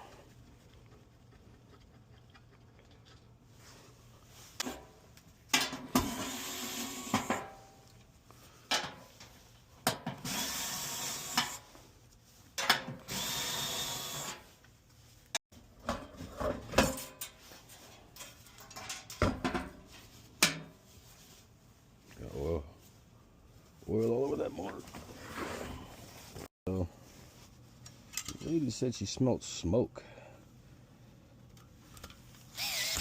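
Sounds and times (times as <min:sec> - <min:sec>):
power drill running: 0:13.1 - 0:14.4, 0:32.5 - 0:33.0.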